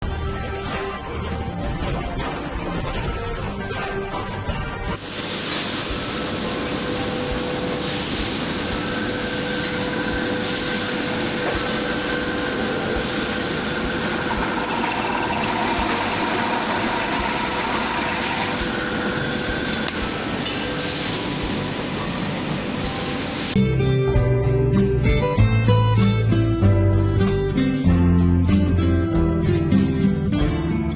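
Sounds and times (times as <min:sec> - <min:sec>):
drill press motor humming: 0:05.7 - 0:23.2.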